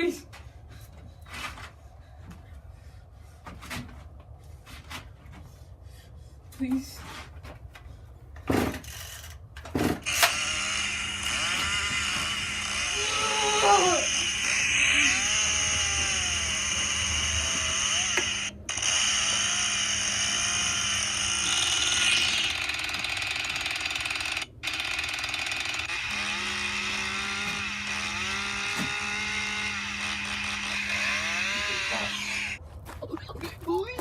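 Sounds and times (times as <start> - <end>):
chainsaw running: 10.0 - 32.6.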